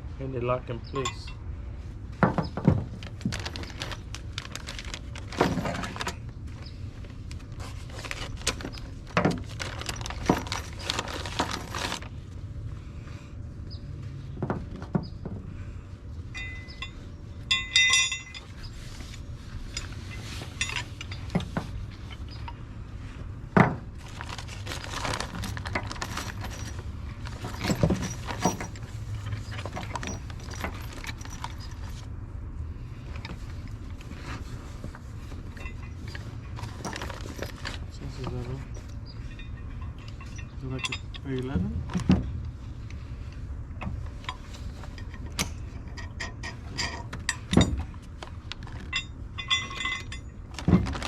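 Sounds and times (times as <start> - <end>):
steady low hum: 0.0 - 51.0
metal tools clinking and rattling: 0.8 - 1.4, 2.2 - 6.3, 7.5 - 12.2, 16.3 - 22.7, 23.6 - 32.1, 34.0 - 42.2, 43.8 - 51.0
metallic jangle: 16.3 - 18.6, 25.9 - 32.0, 48.8 - 50.4.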